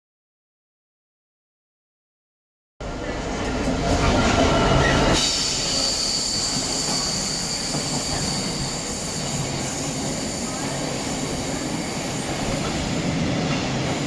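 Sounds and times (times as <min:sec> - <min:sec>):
train rumbling on rails: 0:02.8 - 0:14.0
wheels squealing against rails: 0:03.0 - 0:13.2.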